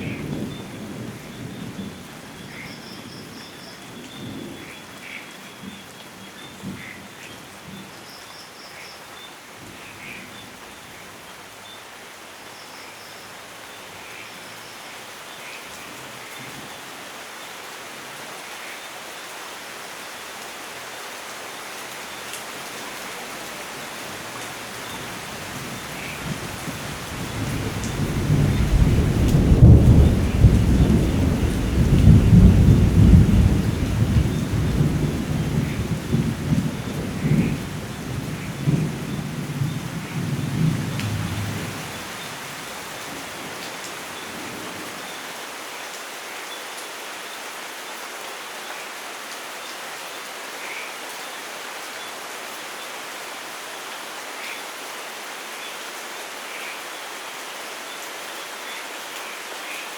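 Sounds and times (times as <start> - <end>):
rain falling: 0.0 - 59.9
thunder rumbling: 25.0 - 43.4.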